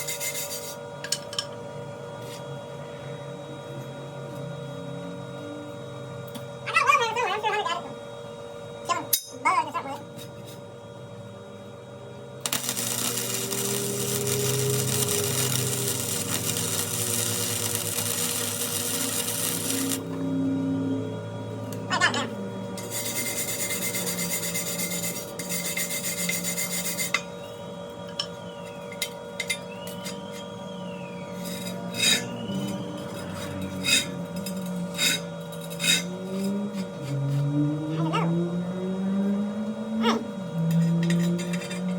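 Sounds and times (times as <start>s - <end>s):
hum: 11.2s - 35.0s
electric welder crackling buzz: 12.3s - 20.6s.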